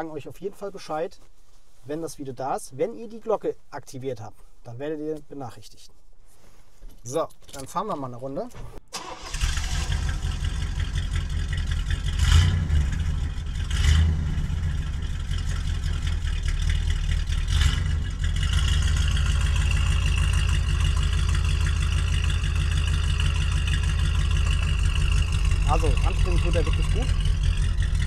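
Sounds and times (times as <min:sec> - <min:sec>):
car engine running: 0:09.2 - 0:28.0.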